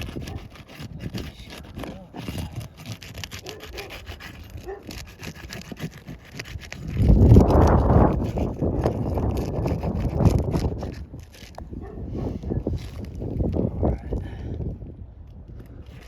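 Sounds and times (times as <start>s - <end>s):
metal tool scraping shingles: 0.0s - 11.6s
wind gust on microphone: 0.0s - 16.0s.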